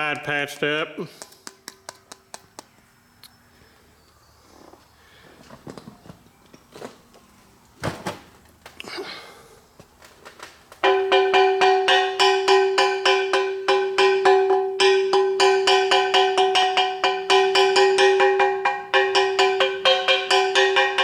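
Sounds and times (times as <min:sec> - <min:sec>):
metal casting struck ringing: 0:10.8 - 0:21.0.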